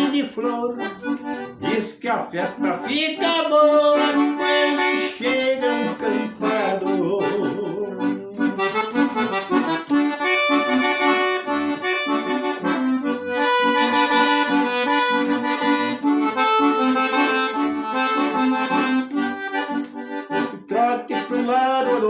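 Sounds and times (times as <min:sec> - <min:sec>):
accordion playing: 0:00.0 - 0:22.0.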